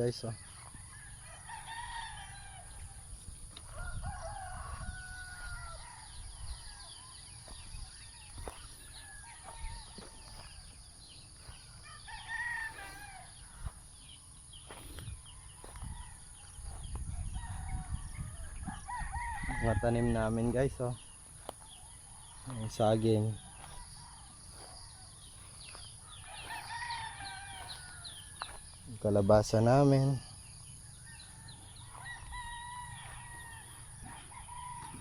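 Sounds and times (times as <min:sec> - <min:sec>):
roosters crowing: 0:00.0 - 0:35.0.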